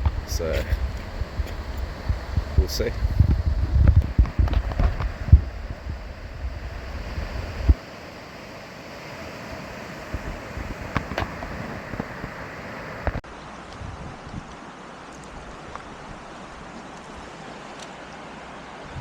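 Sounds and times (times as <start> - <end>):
wind buffeting microphone: 0.0 - 14.6
river water flowing: 0.0 - 19.0.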